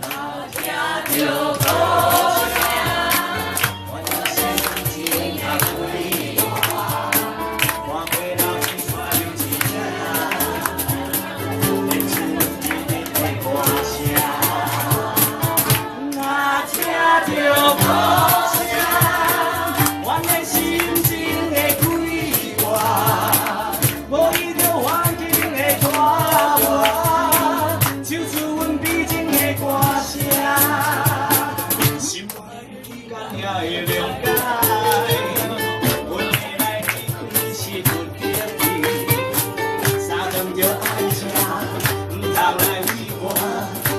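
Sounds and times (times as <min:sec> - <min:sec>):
group of voices singing: 0:00.0 - 0:43.9
ukuleles strumming: 0:00.0 - 0:43.9
bass line: 0:01.6 - 0:16.1, 0:17.2 - 0:32.1.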